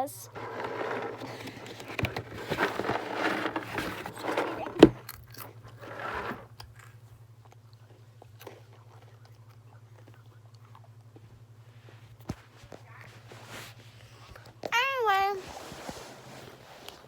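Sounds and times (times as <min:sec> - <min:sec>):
crunching and chewing crackers: 0:02.6 - 0:13.3.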